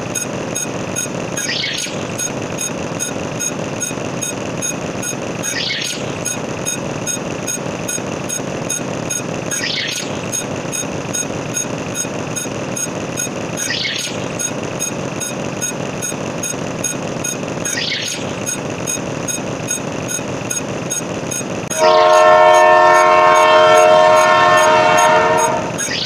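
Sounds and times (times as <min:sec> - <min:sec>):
regular clicking: 0:00.0 - 0:21.8
loud horn-like chord: 0:21.7 - 0:25.8.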